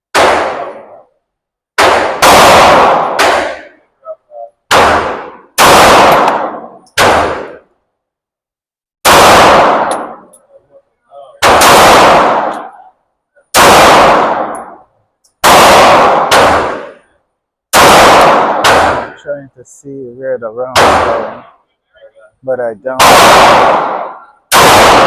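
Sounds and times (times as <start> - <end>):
pistol shots echoing indoors: 1.8 - 3.9, 4.7 - 7.7, 9.0 - 10.4, 11.4 - 19.2, 22.9 - 25.0.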